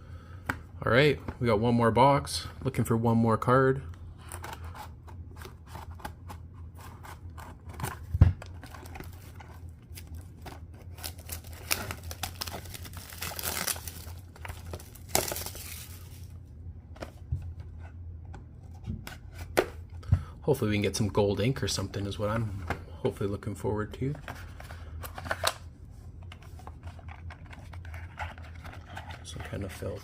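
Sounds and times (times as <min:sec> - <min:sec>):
plastic wrap crinkling and tearing: 0:08.6 - 0:16.3.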